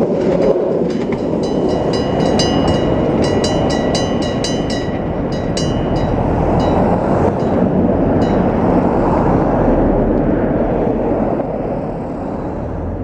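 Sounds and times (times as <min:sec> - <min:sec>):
crossing bell ringing rapidly: 0:00.0 - 0:09.8
train rumbling past: 0:00.0 - 0:13.0.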